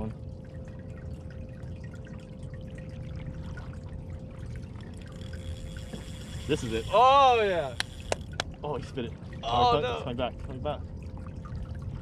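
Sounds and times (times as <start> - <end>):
faint steady hum: 0.0 - 12.0
wind rumble on microphone: 4.4 - 12.0.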